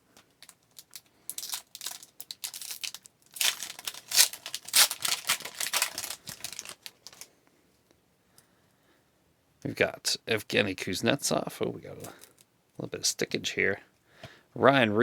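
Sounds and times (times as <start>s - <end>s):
foil wrapper crinkling and tearing: 0.0s - 7.3s.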